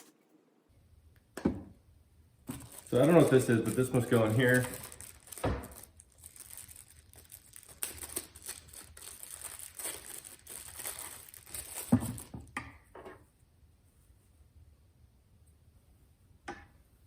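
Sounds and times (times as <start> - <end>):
plastic packaging crinkling: 2.5 - 12.5.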